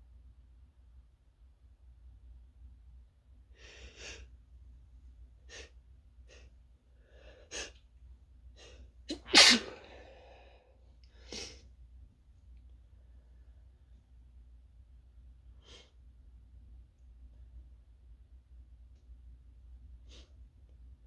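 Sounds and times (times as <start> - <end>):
person sneezing loudly: 9.1 - 10.4.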